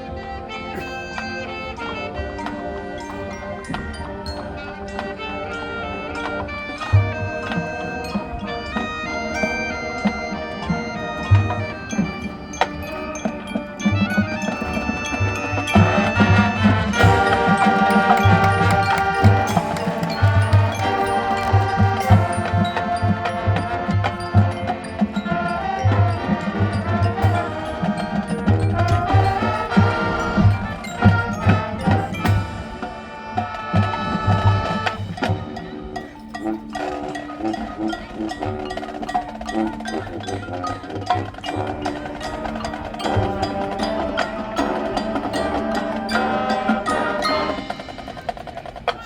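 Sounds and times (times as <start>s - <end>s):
marching band playing: 0.0s - 49.0s.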